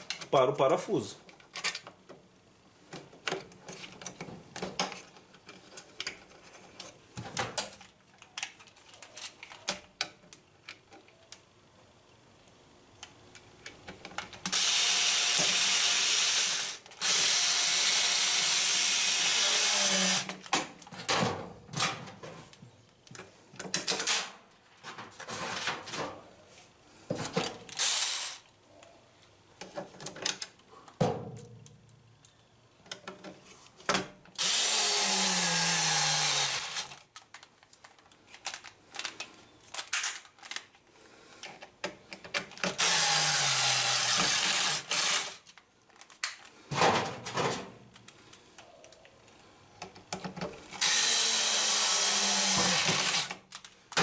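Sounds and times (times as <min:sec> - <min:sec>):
electric drill driving screws: 0:14.5 - 0:20.3, 0:27.8 - 0:28.4, 0:34.4 - 0:37.0, 0:42.8 - 0:45.4, 0:50.8 - 0:53.4.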